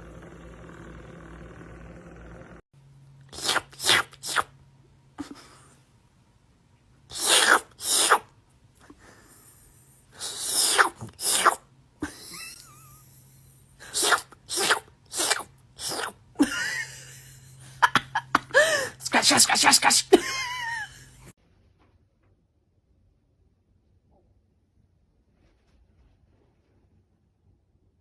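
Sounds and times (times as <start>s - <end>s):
person sneezing: 3.4s - 4.5s, 5.2s - 5.8s, 7.1s - 9.3s, 10.1s - 12.3s, 13.8s - 17.1s, 17.8s - 21.3s.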